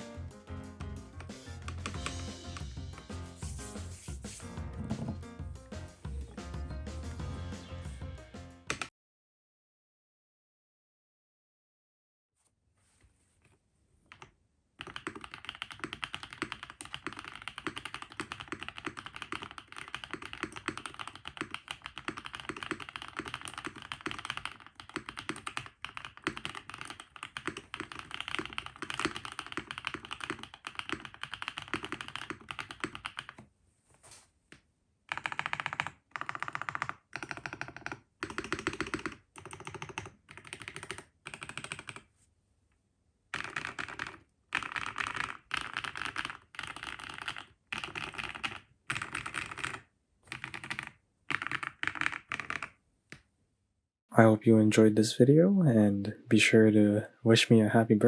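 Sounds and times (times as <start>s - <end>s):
mechanical keyboard typing: 1.2s - 2.2s, 14.1s - 33.4s, 35.1s - 42.1s, 43.3s - 53.2s.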